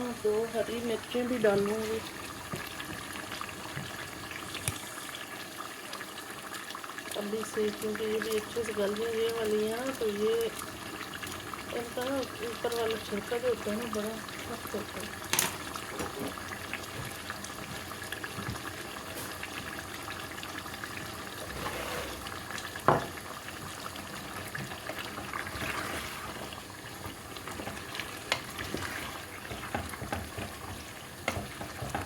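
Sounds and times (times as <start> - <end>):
food sizzling and bubbling: 0.0 - 32.0
utensil knocking against pan: 29.5 - 32.0.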